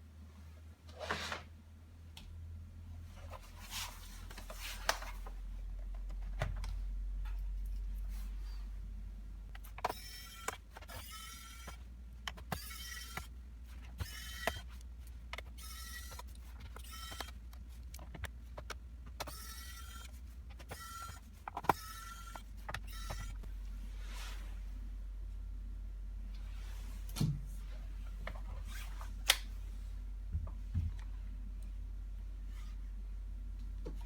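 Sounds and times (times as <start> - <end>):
electric screwdriver whirring: 9.8 - 11.8, 12.5 - 13.3, 14.0 - 14.8, 15.5 - 17.4, 19.2 - 23.4.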